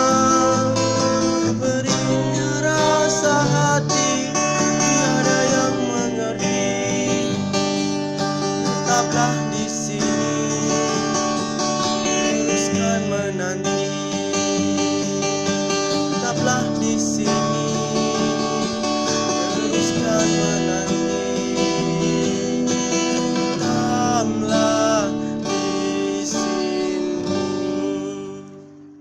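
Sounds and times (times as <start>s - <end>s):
acoustic guitar chords: 0.0s - 29.0s.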